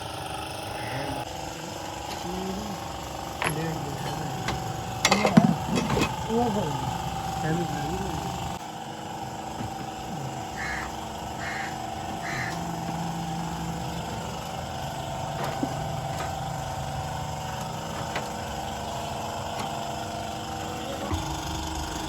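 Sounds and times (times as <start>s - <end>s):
engine idling: 0.0s - 22.0s
short high calls: 10.5s - 12.7s.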